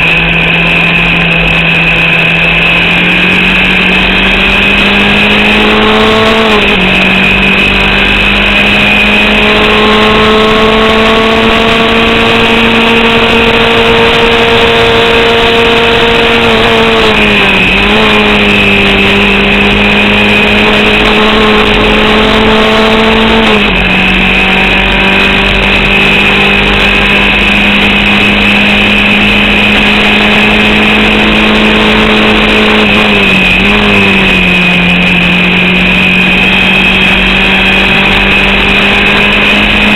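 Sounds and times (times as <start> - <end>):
race car engine running hard: 0.0 - 39.9.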